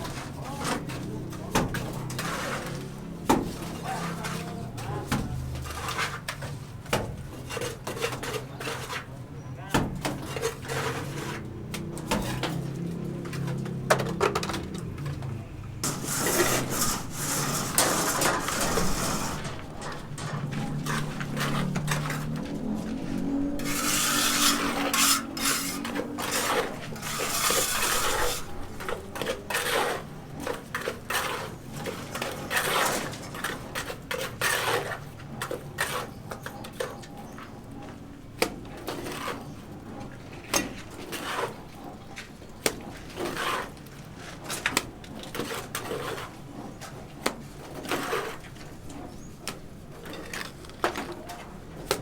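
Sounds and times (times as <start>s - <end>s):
scraping and rustling: 0.0s - 9.4s, 10.0s - 38.0s, 38.6s - 52.0s
tools clinking and knocking: 18.1s - 22.8s.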